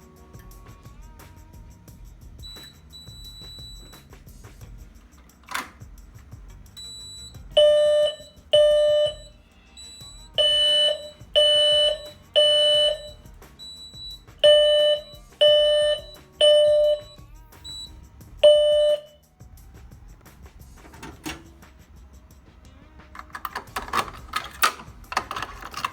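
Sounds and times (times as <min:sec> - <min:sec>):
fire alarm horn blasts: 0:06.8 - 0:19.2.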